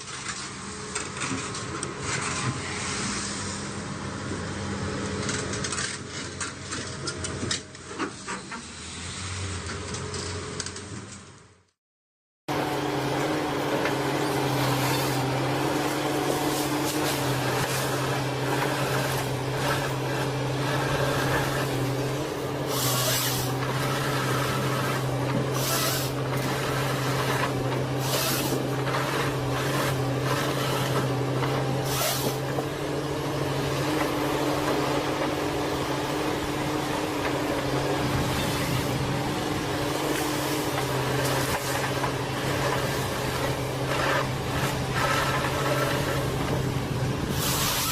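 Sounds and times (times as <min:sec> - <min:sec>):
machinery humming: 0:12.5 - 0:47.9.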